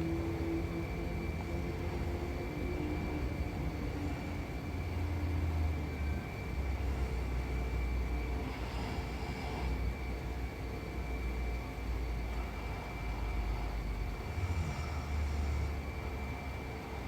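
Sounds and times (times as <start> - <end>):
woman snoring: 14.2 - 15.8.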